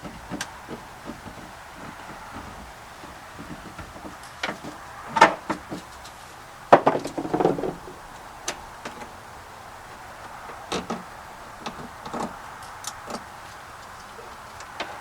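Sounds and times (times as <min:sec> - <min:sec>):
knocks and taps: 0:00.0 - 0:05.9
rustling or scraping: 0:00.0 - 0:15.0.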